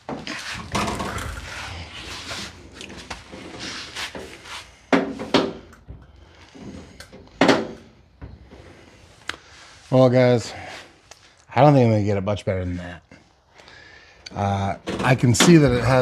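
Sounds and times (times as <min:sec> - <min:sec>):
car door scraping and rattling: 0:00.1 - 0:08.9, 0:14.9 - 0:16.0.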